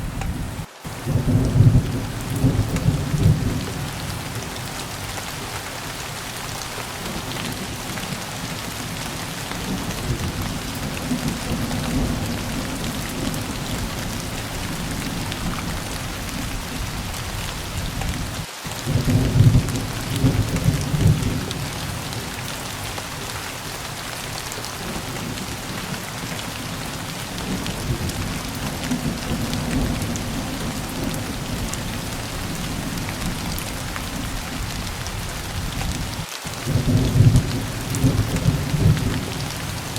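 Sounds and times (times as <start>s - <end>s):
steady rain falling: 0.0s - 39.9s
thunder rolling: 0.0s - 39.9s.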